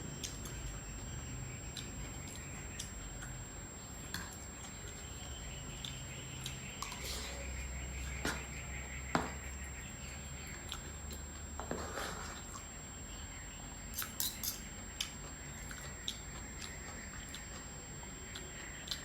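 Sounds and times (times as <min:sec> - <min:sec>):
spoon clicking against plate: 0:14.0 - 0:14.7.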